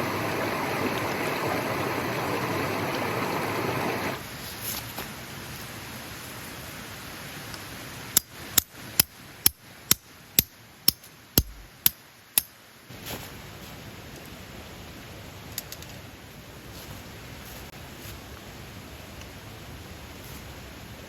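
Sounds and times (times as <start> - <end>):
sharp knocks: 11.4 - 12.0.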